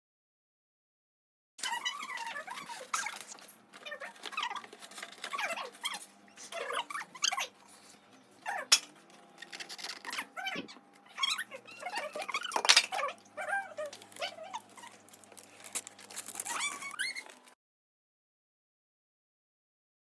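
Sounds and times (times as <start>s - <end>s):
pet animal crying: 1.6s - 7.8s, 10.1s - 17.5s.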